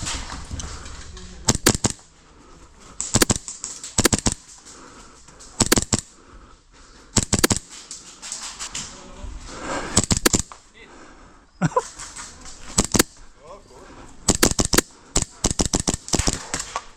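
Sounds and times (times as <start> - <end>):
airsoft pistol firing: 1.4 - 2.1, 3.0 - 4.5, 5.6 - 6.1, 7.2 - 7.8, 9.9 - 10.6, 12.6 - 13.2, 14.3 - 16.9.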